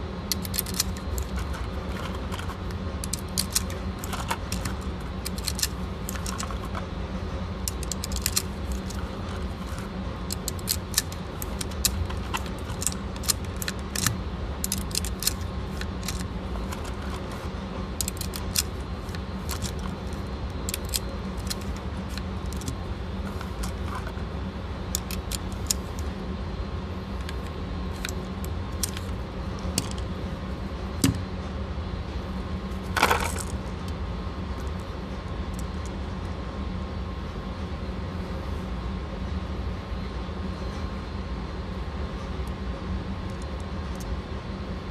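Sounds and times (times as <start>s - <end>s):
steady low hum: 0.0s - 44.9s.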